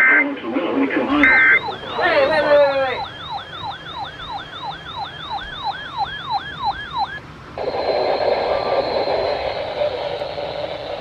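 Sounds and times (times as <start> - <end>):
radio static hiss: 0.0 - 4.9, 7.4 - 11.0
electronic siren yelping: 1.1 - 11.0.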